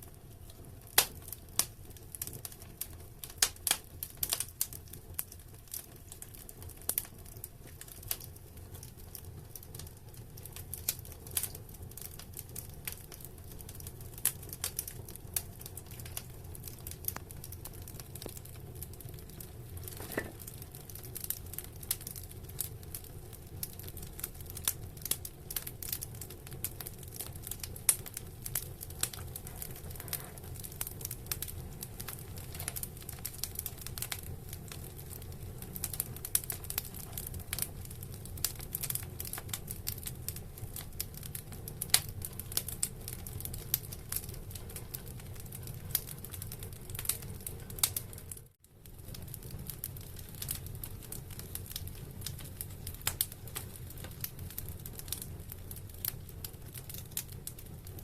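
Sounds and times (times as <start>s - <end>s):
low fire rumble: 0.0s - 58.0s
wood fire crackling: 0.0s - 58.0s.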